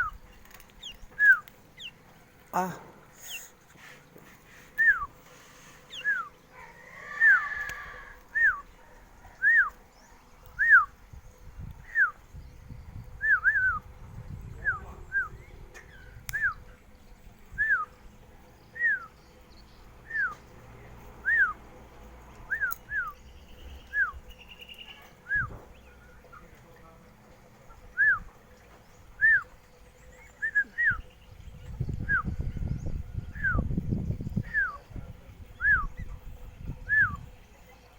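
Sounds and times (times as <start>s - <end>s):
bird whistling downward notes: 0.8s - 1.9s, 4.8s - 5.2s, 5.9s - 8.7s.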